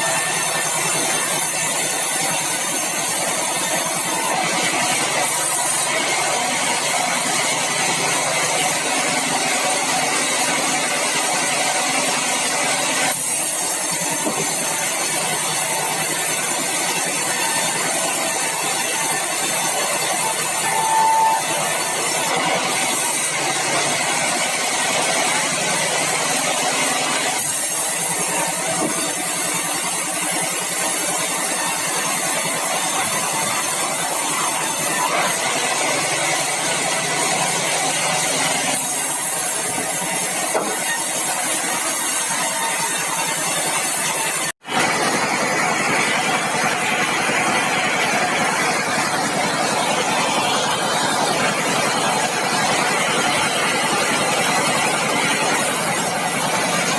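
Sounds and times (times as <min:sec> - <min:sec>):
sawmill machinery running: 0:00.0 - 0:56.9
brief high tone: 0:20.6 - 0:21.5.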